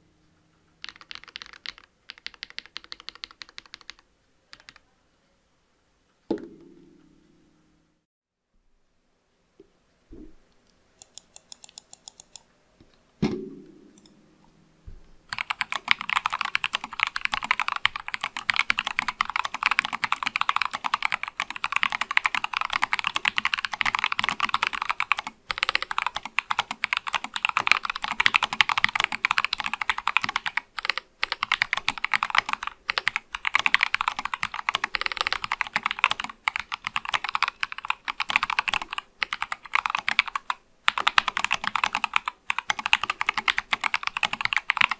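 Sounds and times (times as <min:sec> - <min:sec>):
mechanical keyboard typing: 0:00.8 - 0:04.8, 0:11.0 - 0:12.4, 0:15.3 - 0:44.9
low thump: 0:14.8 - 0:15.2.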